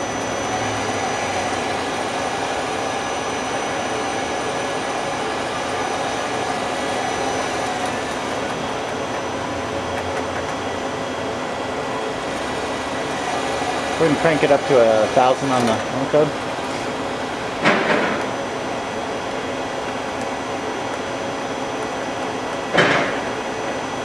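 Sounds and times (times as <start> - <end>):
faint whining tones: 0.0 - 22.7
rotary machine tool humming: 0.0 - 24.0.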